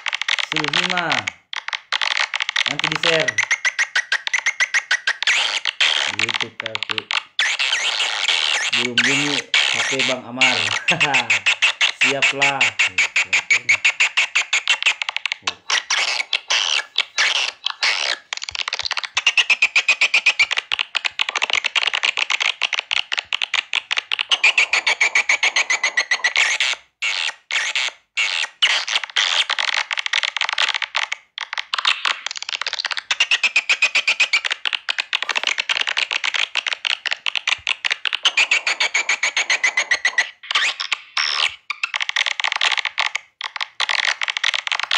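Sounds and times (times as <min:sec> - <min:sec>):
swiftlets chirping and chattering: 0:02.0 - 0:27.2, 0:31.8 - 0:42.0
twittering trills: 0:06.0 - 0:14.1.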